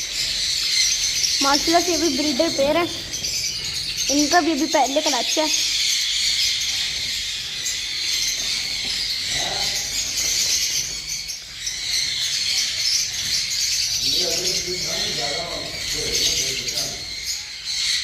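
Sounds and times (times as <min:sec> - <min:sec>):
sparrows chirping: 0:00.0 - 0:18.0.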